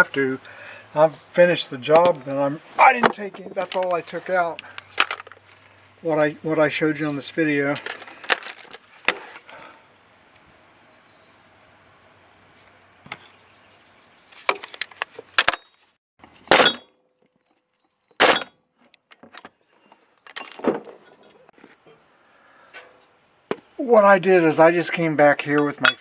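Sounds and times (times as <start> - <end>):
tools and parts clinking: 3.0 - 5.7, 7.7 - 9.6, 14.4 - 16.8, 18.1 - 21.9, 25.6 - 26.0.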